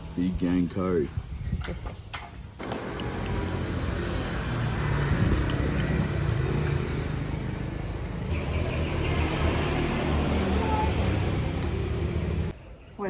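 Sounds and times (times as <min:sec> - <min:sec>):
road traffic rumble: 0:02.4 - 0:12.8.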